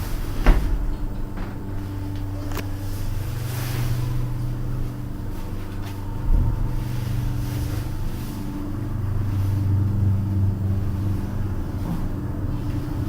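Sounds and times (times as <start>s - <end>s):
lift car hum: 0.0s - 13.0s
low thump: 0.4s - 1.6s.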